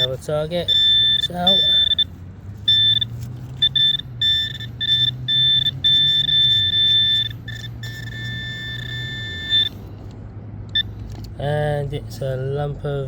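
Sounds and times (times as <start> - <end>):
pinpointer electronic beeps: 0.0 - 2.1, 2.7 - 9.8.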